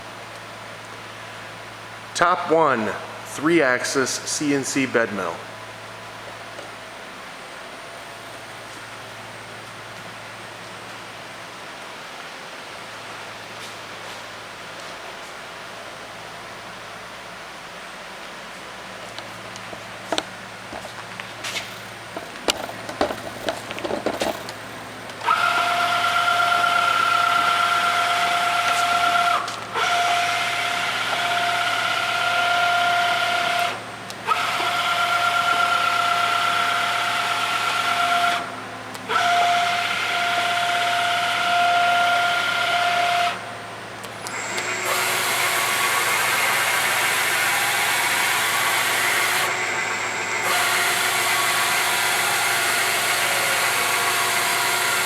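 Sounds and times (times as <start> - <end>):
machine running noisily: 19.7 - 55.0
milling machine whine: 19.7 - 55.0
mill clicks: 20.1 - 25.4.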